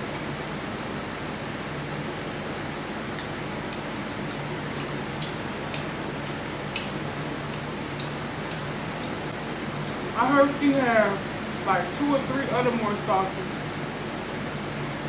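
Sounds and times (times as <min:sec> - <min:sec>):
chewing and mouth smacks: 0:02.5 - 0:09.2.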